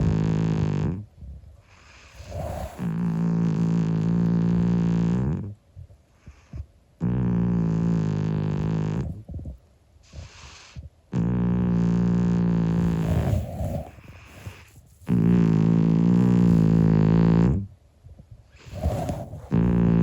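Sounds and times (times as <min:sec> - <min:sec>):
cat snoring: 0:00.0 - 0:05.6, 0:06.2 - 0:17.7, 0:18.5 - 0:20.0
cat breathing quietly: 0:01.6 - 0:03.2, 0:10.0 - 0:10.9, 0:12.7 - 0:16.9, 0:18.5 - 0:20.0.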